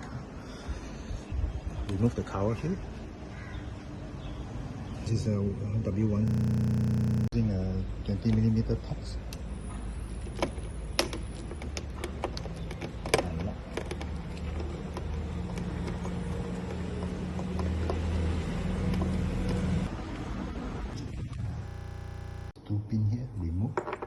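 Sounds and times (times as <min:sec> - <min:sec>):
steady low hum: 0:06.2 - 0:07.4, 0:21.0 - 0:22.6
clicks and knocks of lock parts: 0:10.2 - 0:18.2.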